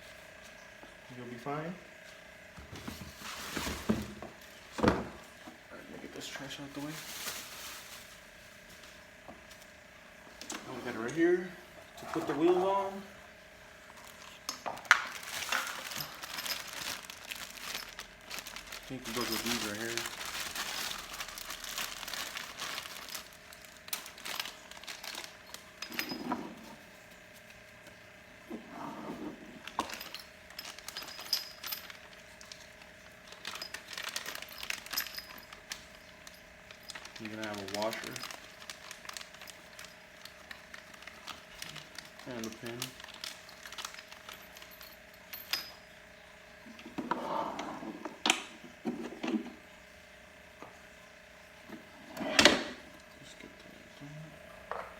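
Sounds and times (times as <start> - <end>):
packaging crinkling and rustling: 2.7 - 5.2, 6.2 - 9.7, 13.9 - 26.2, 29.6 - 45.7
small metal parts clicking: 33.3 - 45.7.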